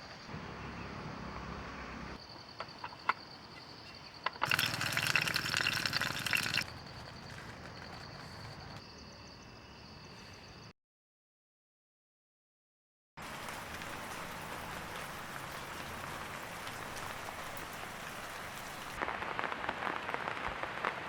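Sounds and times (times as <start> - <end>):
water drips: 4.3 - 6.8, 13.2 - 19.0
water running: 4.4 - 6.8.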